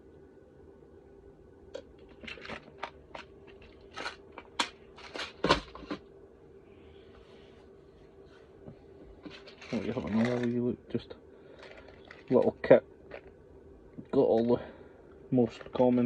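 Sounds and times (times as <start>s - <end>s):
faint steady hum: 0.0s - 16.0s
rummaging through small components: 2.0s - 6.0s, 9.2s - 10.7s, 11.5s - 13.4s, 15.4s - 16.0s.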